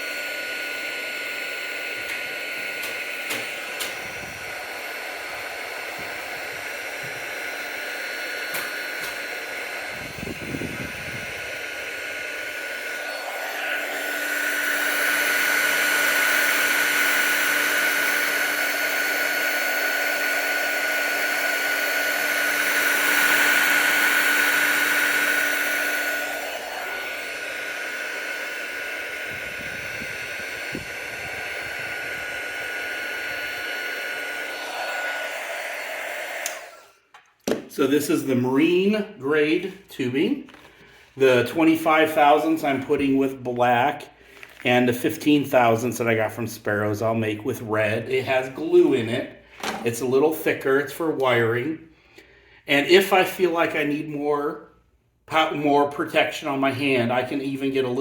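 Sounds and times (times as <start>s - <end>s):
heat gun blowing with a whine: 0.0s - 46.2s.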